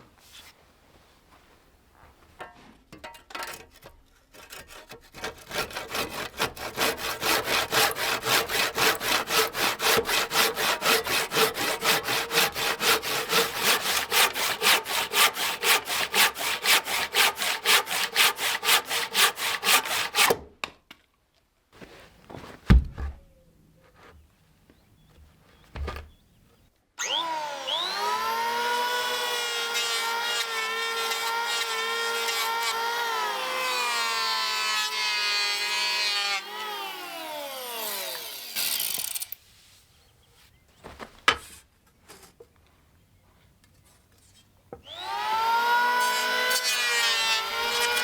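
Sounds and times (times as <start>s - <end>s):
hand saw cutting wood: 4.3s - 20.4s, 27.0s - 39.4s, 44.8s - 48.0s
heavy thump: 22.4s - 23.2s.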